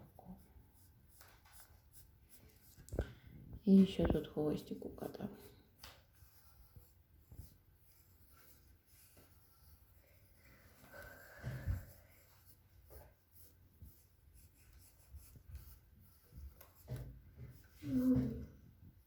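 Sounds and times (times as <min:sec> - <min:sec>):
drawing tool scratching paper: 0:06.0 - 0:10.4, 0:11.7 - 0:17.8.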